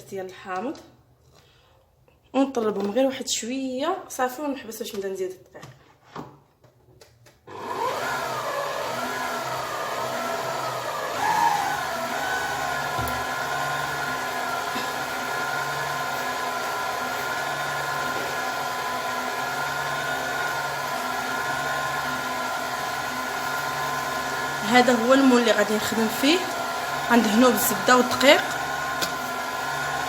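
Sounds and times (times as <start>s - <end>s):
electric mixer beating batter: 7.5s - 30.0s.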